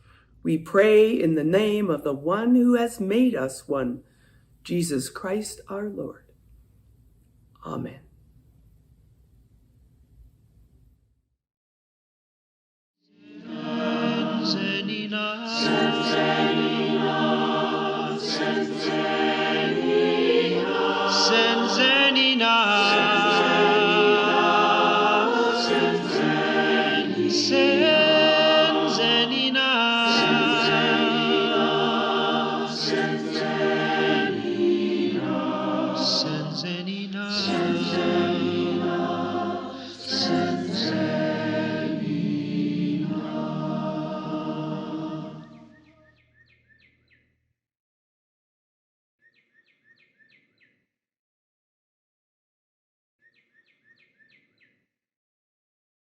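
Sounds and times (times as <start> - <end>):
choir singing a hymn: 13.1 - 45.8.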